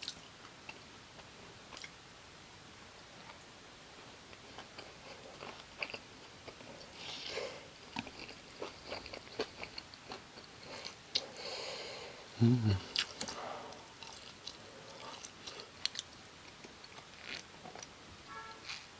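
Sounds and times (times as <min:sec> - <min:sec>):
person chewing and biting food: 0:04.3 - 0:11.4, 0:12.8 - 0:17.9, 0:18.6 - 0:18.9.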